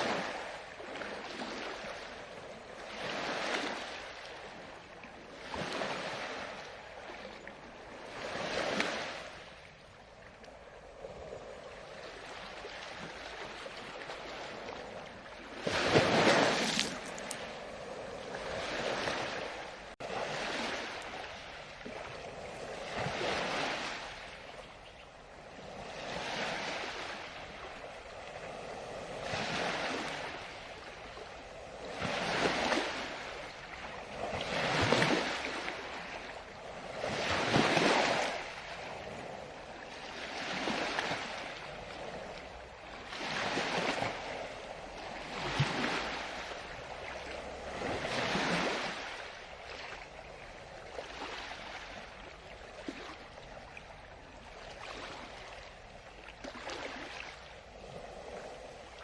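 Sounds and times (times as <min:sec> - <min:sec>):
ocean waves washing on shore: 0:00.0 - 0:59.0.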